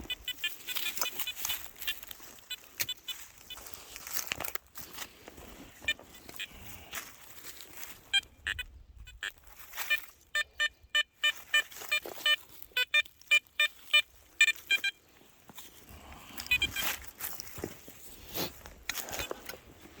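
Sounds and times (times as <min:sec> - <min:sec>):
metal detector beeps: 0:00.0 - 0:04.0, 0:05.7 - 0:15.2, 0:16.2 - 0:17.3
digging in soil: 0:00.0 - 0:08.4, 0:11.2 - 0:20.0.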